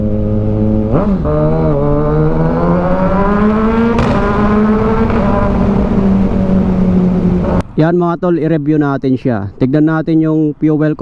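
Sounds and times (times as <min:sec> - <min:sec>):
loud motorcycle engine revving: 0:00.0 - 0:07.8.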